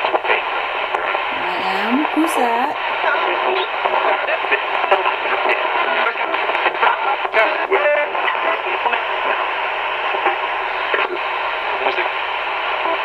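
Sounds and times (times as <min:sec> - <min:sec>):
choppy radio static: 0:00.0 - 0:09.5
fragments of broadcast voices: 0:00.0 - 0:13.0.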